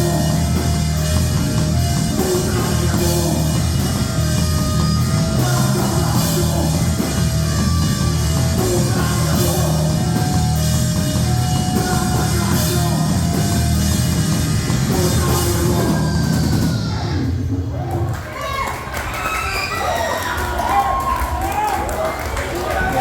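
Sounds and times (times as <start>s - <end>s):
heavy rock music: 0.0s - 17.8s
drum kit beating: 0.0s - 18.0s.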